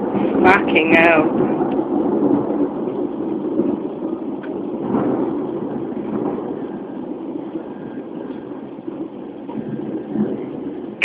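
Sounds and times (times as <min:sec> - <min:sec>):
thunder rumbling: 0:00.0 - 0:11.0.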